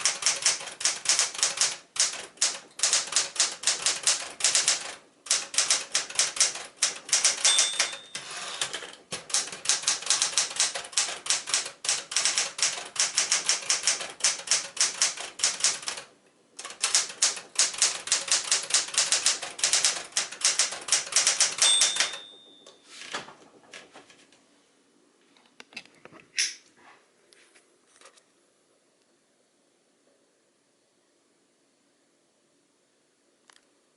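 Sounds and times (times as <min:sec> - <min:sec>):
manual typewriter typing: 0:00.0 - 0:23.8
typewriter bell ringing: 0:06.4 - 0:08.8, 0:20.5 - 0:22.9.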